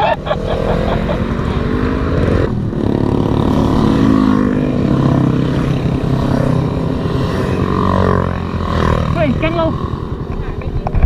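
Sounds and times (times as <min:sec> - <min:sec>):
motorcycle engine accelerating: 0:00.0 - 0:11.0
wind rumbling on microphone: 0:10.3 - 0:11.0.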